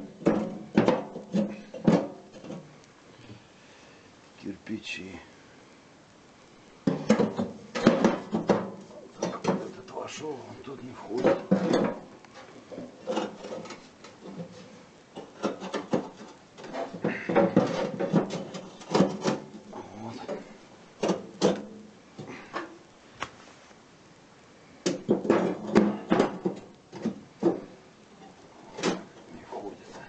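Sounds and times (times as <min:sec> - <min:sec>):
bricks knocking and scraping on metal: 0:00.0 - 0:02.7, 0:06.8 - 0:09.9, 0:11.1 - 0:22.8, 0:24.8 - 0:30.0.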